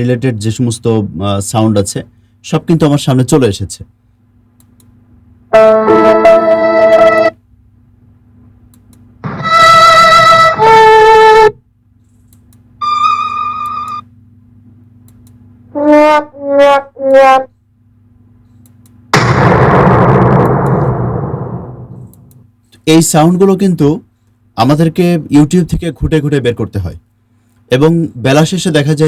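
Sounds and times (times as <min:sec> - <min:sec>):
sad trombone notes: 0:05.6 - 0:07.3
loud noisy burst: 0:09.2 - 0:10.6, 0:19.2 - 0:22.4
falling brass sting: 0:09.2 - 0:11.2, 0:19.2 - 0:22.2.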